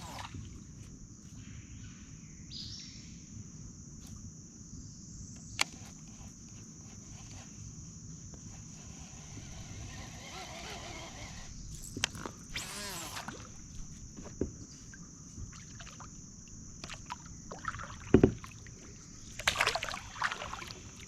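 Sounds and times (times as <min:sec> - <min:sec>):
high-pitched insect drone: 0:08.2 - 0:14.0.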